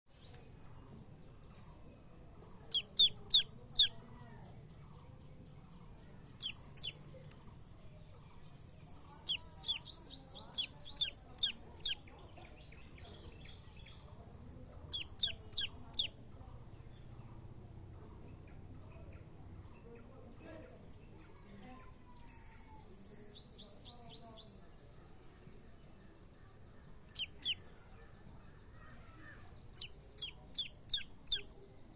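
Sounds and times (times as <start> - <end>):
baby chicks peeping: 2.5 - 7.8, 8.4 - 14.0, 14.9 - 16.2, 27.0 - 27.8, 29.5 - 31.5.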